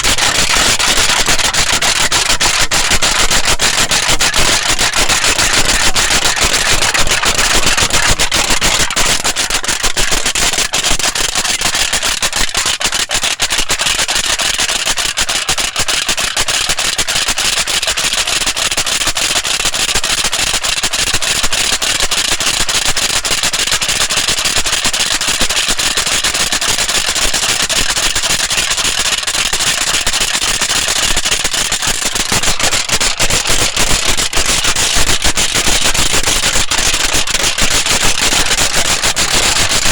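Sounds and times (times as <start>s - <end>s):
tin foil crinkling: 30.2s - 39.9s.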